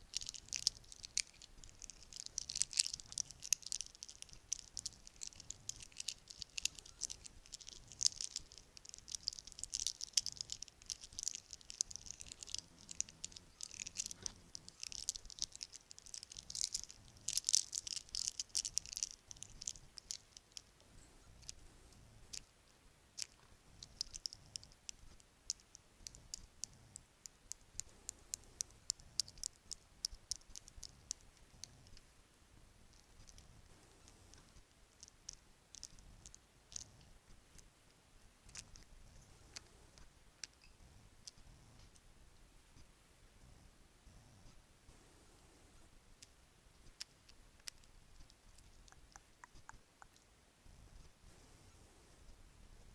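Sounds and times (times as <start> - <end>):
bracelets clinking and jingling: 0.0 - 20.7.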